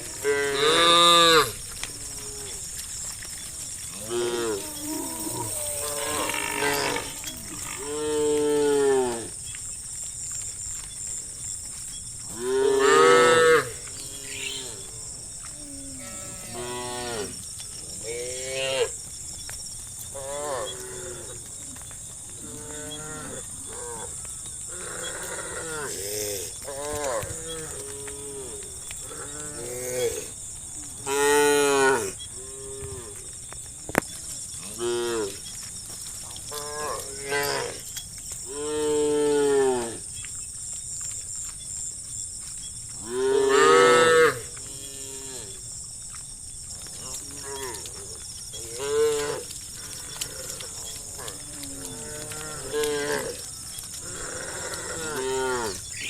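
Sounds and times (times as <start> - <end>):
cattle mooing: 15.7 - 17.4, 51.2 - 56.0.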